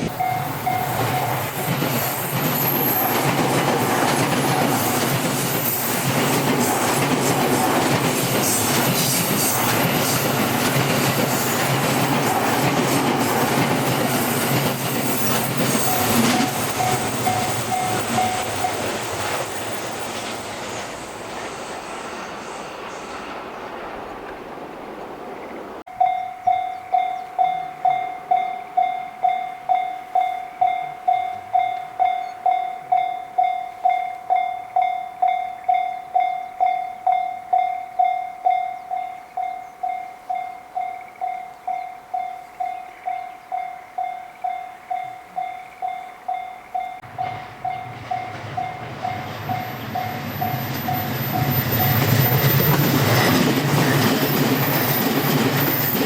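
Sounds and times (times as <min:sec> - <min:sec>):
level crossing bell ringing: 0:00.0 - 0:01.6, 0:15.1 - 0:18.9, 0:25.9 - 0:52.1
train wheels on rails: 0:00.0 - 0:56.0.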